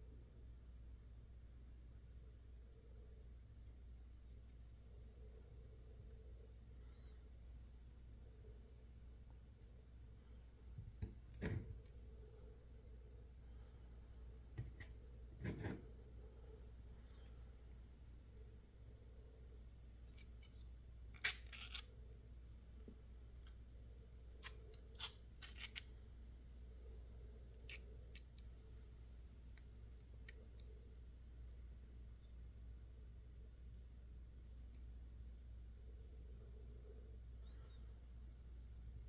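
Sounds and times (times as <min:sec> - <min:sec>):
low steady hum: 0:00.0 - 0:39.0
small metal parts clicking: 0:20.1 - 0:21.9, 0:23.3 - 0:23.6, 0:24.4 - 0:25.9, 0:27.6 - 0:29.0, 0:29.6 - 0:30.8.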